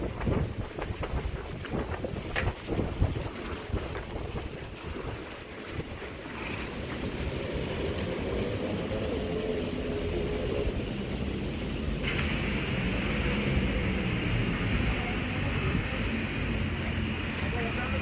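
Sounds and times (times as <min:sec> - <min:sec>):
wind buffeting microphone: 0:00.0 - 0:18.0.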